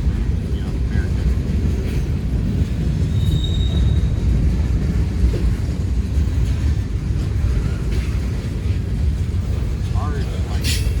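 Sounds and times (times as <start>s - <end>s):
train wheels rumbling on rails: 0.0s - 11.0s
wheel squealing on rail: 1.8s - 5.5s, 10.3s - 11.0s.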